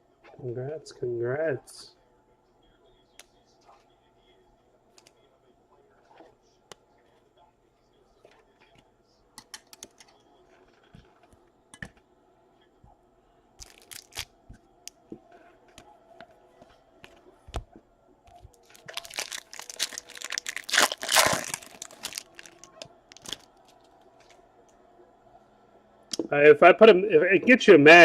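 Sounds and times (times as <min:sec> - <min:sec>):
plastic wrapper crinkling and tearing: 0:13.6 - 0:14.3, 0:18.5 - 0:24.4.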